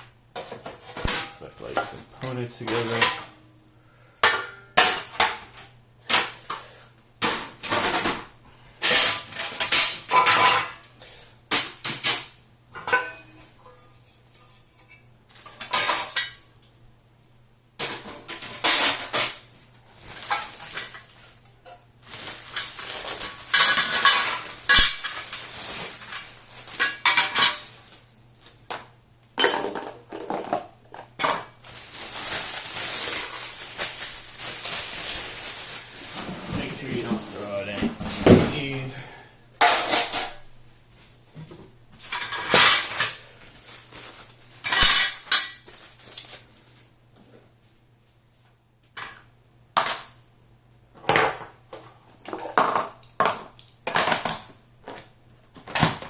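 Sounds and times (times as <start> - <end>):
hard pieces clinking and clattering: 22.3 - 27.7, 51.0 - 55.0.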